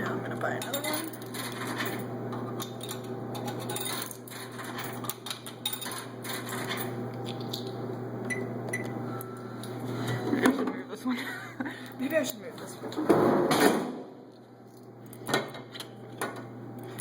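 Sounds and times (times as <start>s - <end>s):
steady low hum: 0.0s - 17.0s
coins fed into vending machine: 2.8s - 6.9s.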